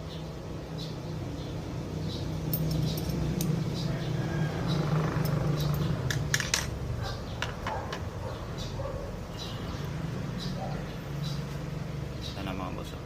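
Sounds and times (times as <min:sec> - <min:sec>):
metal parts clinking: 0:02.5 - 0:03.6.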